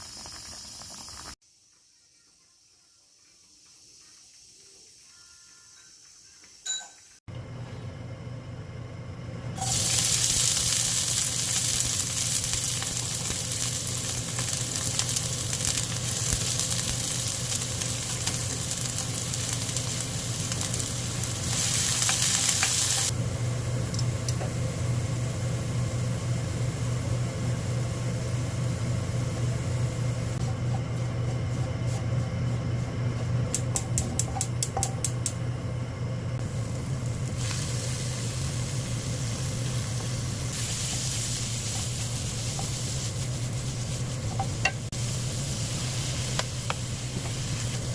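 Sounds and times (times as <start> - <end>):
food sizzling in a frying pan: 9.6 - 32.7, 36.4 - 47.9.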